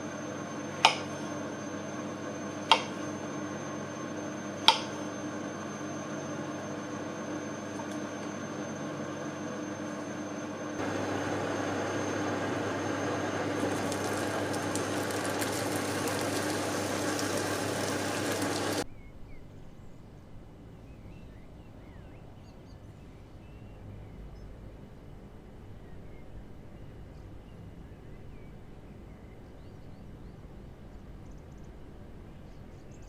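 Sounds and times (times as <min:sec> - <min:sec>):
machine whooshing with low hum: 0:00.0 - 0:18.8
low outdoor rumble: 0:09.9 - 0:18.9.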